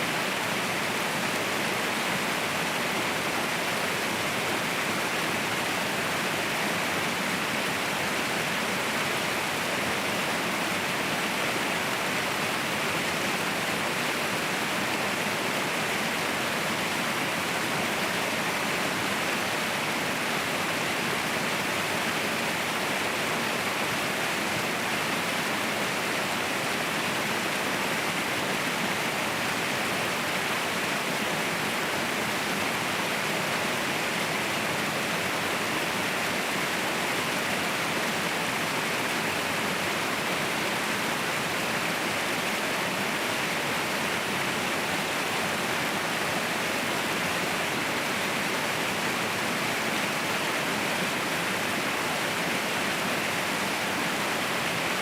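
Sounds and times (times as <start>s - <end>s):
waterfall crashing: 0.0s - 55.0s.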